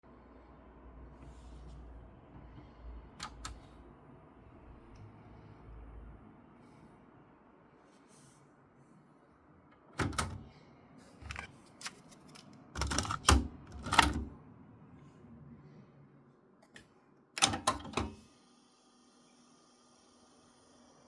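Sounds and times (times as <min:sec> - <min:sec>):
cassette deck mechanism clicks: 0:11.2 - 0:14.3.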